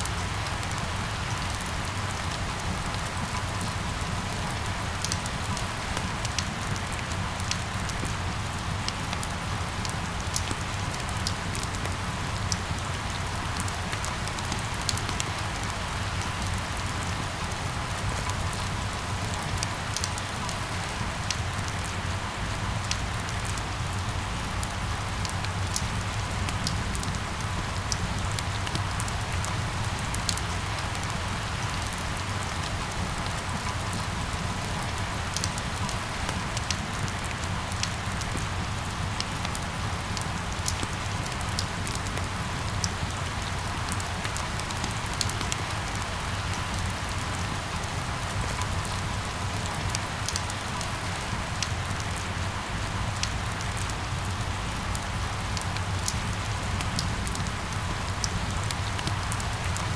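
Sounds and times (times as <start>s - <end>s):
steady rain hiss: 0.0s - 59.9s
raindrop ticks: 40.2s - 47.5s, 53.2s - 59.9s.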